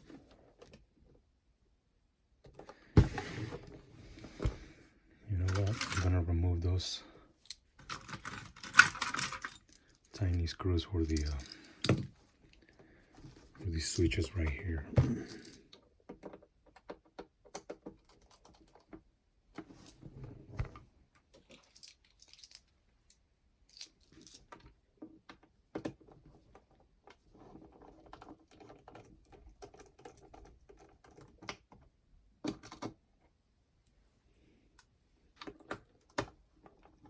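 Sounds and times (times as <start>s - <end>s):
plastic parts handled: 5.4s - 6.2s, 11.0s - 12.2s.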